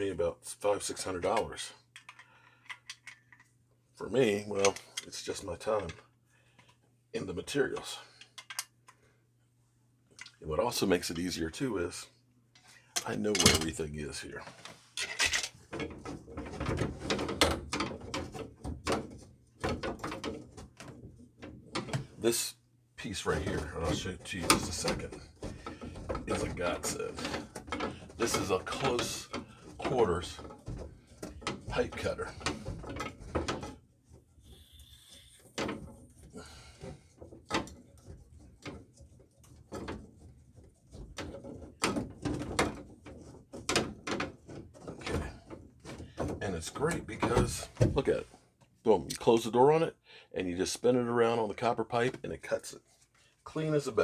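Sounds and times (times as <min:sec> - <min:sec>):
tools knocking and clattering: 0:08.2 - 0:09.0, 0:12.6 - 0:13.8, 0:14.6 - 0:22.2, 0:23.2 - 0:34.6, 0:35.4 - 0:48.2.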